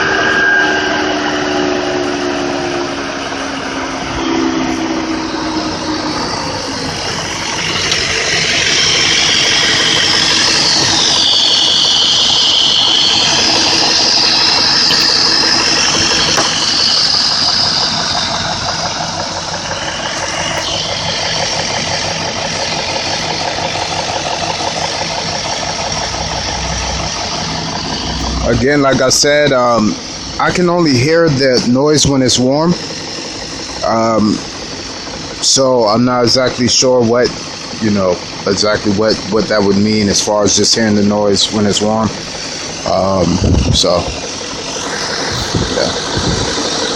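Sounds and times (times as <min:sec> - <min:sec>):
car engine idling: 0:00.0 - 0:46.9
engine knock: 0:03.3 - 0:46.9
strong hiss: 0:41.0 - 0:46.9.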